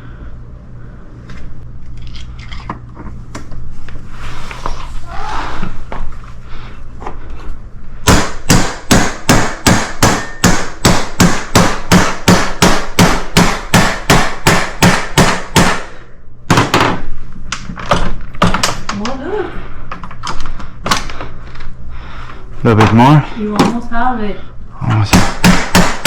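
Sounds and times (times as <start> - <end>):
hammer striking steel: 8.1 - 15.9.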